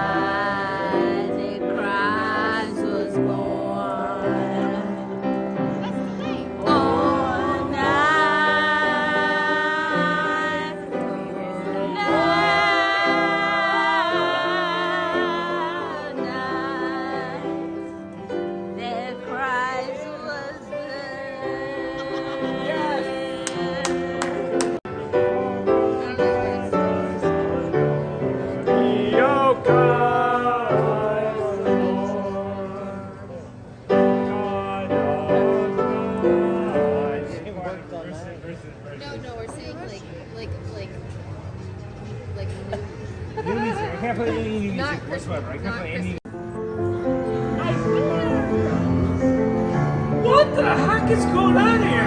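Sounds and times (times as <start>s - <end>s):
woman singing: 0.0s - 5.1s, 6.6s - 17.9s, 18.7s - 24.8s
piano accompaniment: 0.0s - 37.6s, 44.2s - 52.0s.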